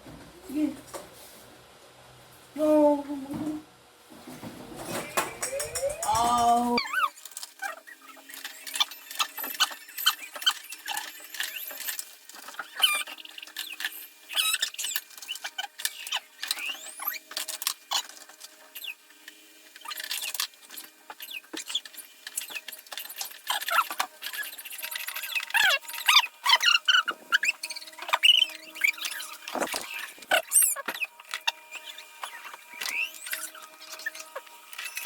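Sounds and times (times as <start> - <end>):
toys clicking and rattling: 4.8 - 35.0
toy squeaks: 23.5 - 35.0.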